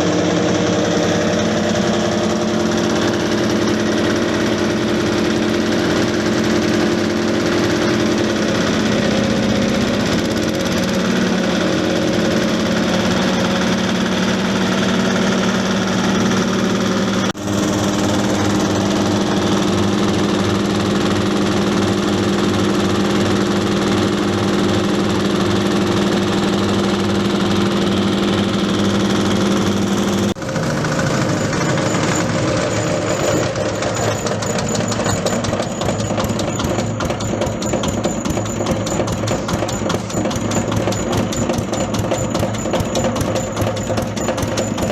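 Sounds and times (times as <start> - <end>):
grinding mill running: 0.0 - 44.9.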